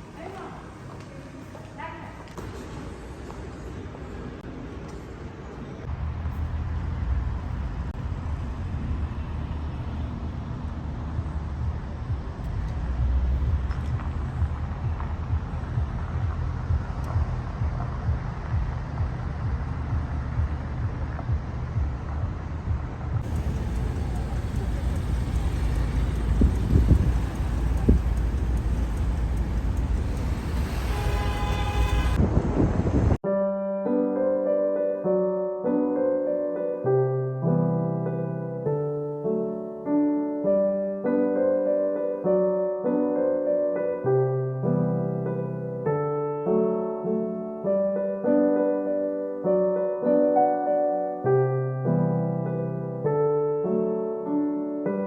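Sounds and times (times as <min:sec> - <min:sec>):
low outdoor rumble: 0:05.8 - 0:33.2
piano music: 0:23.2 - 0:32.2, 0:33.2 - 0:55.0.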